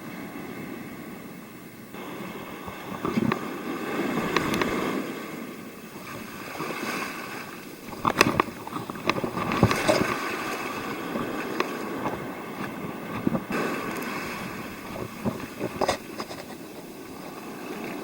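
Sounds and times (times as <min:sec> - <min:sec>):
surf washing on beach: 0:00.0 - 0:18.0
wind on microphone: 0:00.0 - 0:18.0
sharp clicks: 0:04.3 - 0:04.7.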